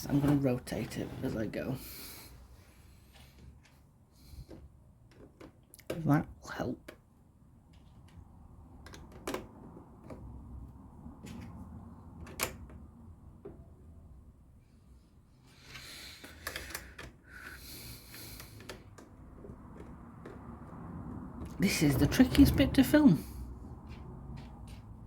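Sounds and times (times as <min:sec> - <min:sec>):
plastic pieces clicking: 0:16.2 - 0:17.6.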